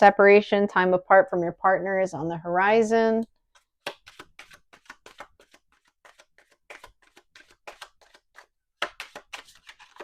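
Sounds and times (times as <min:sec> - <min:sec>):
cards being shuffled: 0:03.4 - 0:10.0.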